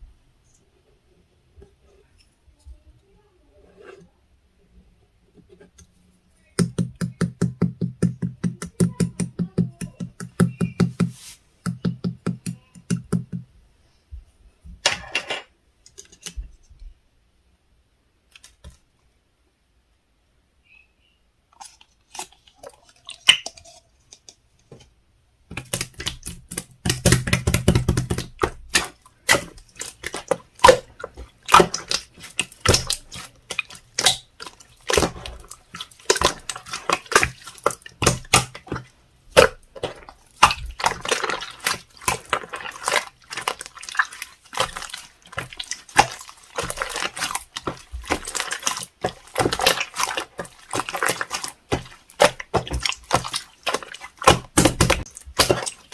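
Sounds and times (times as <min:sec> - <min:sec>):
slime squishing with wet clicks: 0:06.5 - 0:13.4, 0:25.5 - 0:55.9.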